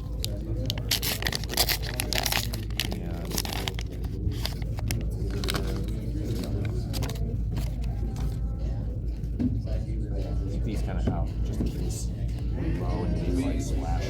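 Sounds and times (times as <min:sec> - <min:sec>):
cards and packaging rustling: 0:00.0 - 0:08.4.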